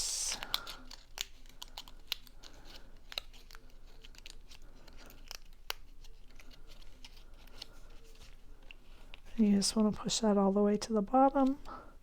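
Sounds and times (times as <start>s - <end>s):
sharp paper clicks: 0.2s - 8.7s.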